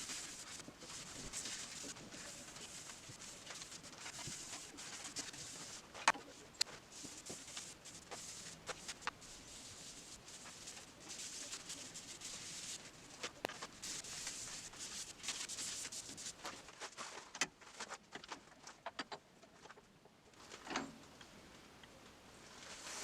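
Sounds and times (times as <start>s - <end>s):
rubbing on a surface: 0.0s - 17.1s.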